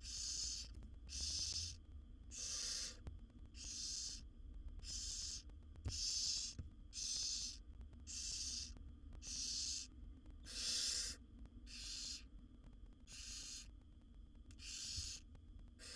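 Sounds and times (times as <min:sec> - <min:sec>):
owl chicks rasping hisses: 0:00.0 - 0:03.0, 0:03.6 - 0:04.2, 0:04.8 - 0:12.3, 0:13.1 - 0:13.7, 0:14.6 - 0:15.2.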